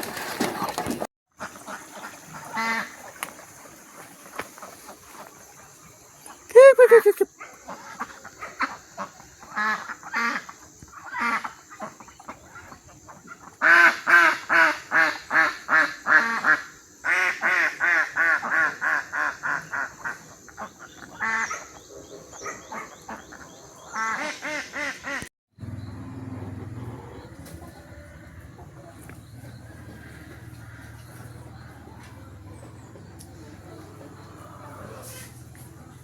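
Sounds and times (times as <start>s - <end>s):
ducks quacking: 0.4s - 5.7s, 6.3s - 25.3s.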